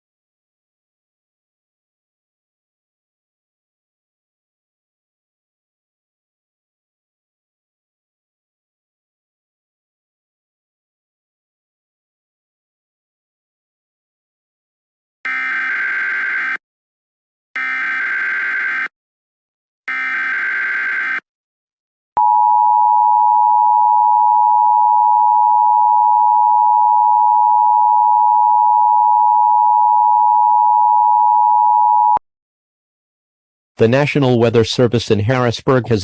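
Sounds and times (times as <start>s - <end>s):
buzzy digital data bursts: 15.3s - 16.6s, 17.6s - 18.9s, 19.9s - 21.2s.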